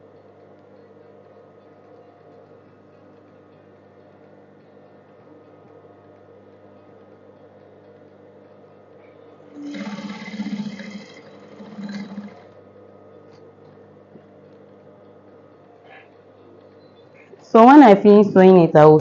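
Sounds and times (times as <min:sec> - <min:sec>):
steady low hum: 0:00.0 - 0:19.0
sewing machine stitching: 0:09.6 - 0:12.6.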